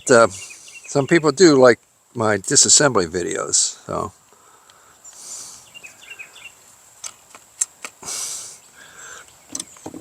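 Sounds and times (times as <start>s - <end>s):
small birds chirping: 0.0s - 10.0s
sharp clicks: 7.0s - 8.0s.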